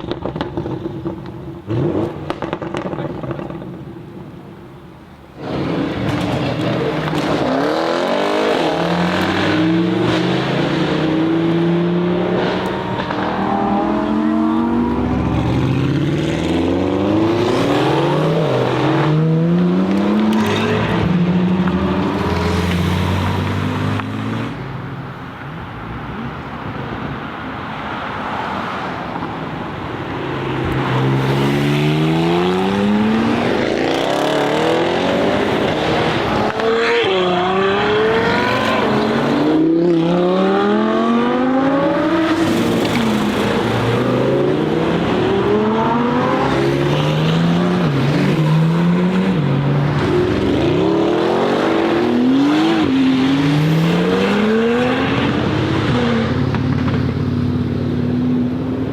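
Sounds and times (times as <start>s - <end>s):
exhaust cracks: 0.0s - 3.9s, 5.4s - 7.6s.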